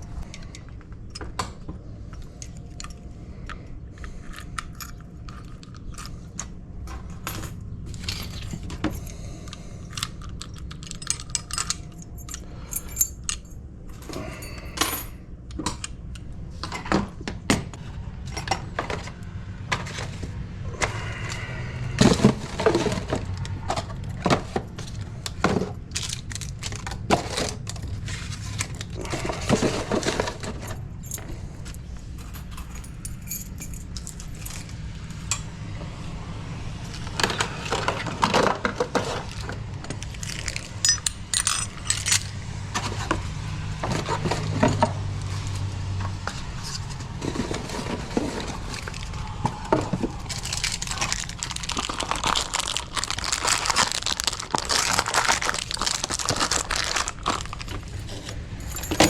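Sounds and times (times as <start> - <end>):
small metal parts clicking: 7.3 - 15.1, 40.0 - 42.4, 50.3 - 59.0.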